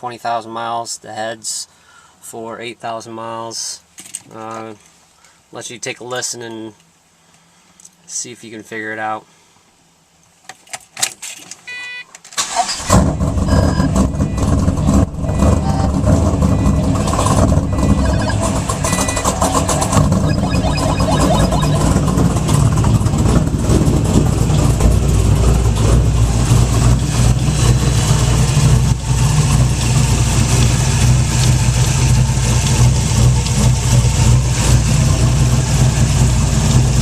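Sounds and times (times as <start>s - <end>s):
car engine idling: 12.9s - 37.0s.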